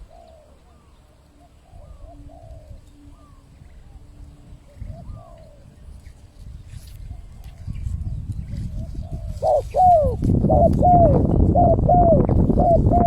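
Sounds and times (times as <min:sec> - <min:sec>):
dove cooing: 0:00.0 - 0:06.0, 0:08.6 - 0:13.0.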